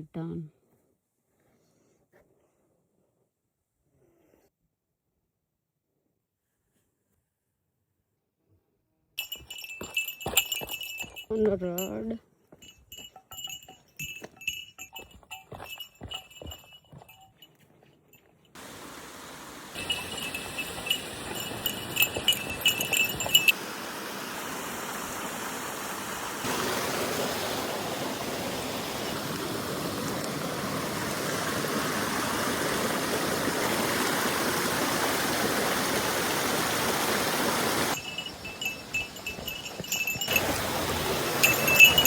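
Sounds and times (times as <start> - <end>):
flowing mountain water: 9.2 - 11.9, 18.6 - 42.0
small metal bell jingling: 9.2 - 18.5, 19.8 - 23.6, 37.9 - 42.0.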